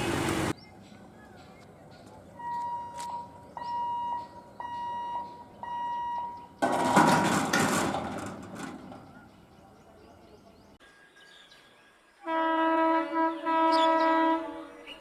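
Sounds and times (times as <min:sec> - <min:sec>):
level crossing alarm beeping: 0:02.4 - 0:06.6.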